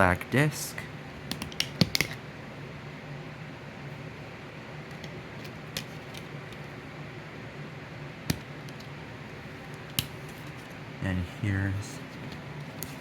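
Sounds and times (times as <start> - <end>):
low room hum: 0.0 - 13.0
plastic cd case clicks: 1.3 - 2.2, 9.7 - 10.6.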